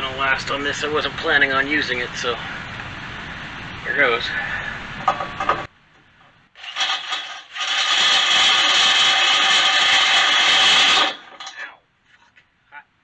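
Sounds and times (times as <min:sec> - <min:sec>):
drill grinding through metal: 0:06.6 - 0:11.6.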